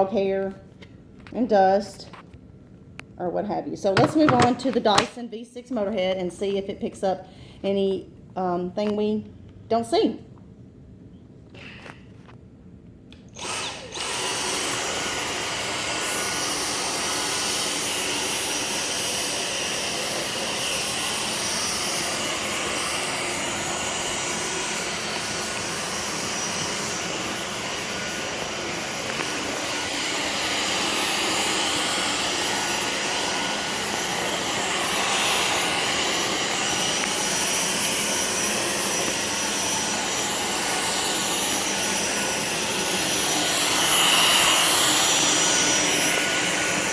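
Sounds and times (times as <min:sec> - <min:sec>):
vacuum cleaner motor whine: 0:04.0 - 0:05.2, 0:13.4 - 0:46.9.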